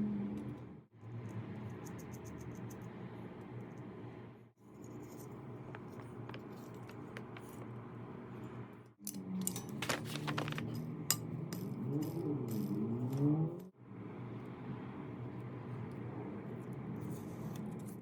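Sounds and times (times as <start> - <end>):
small metal parts rattling: 9.1 - 13.3.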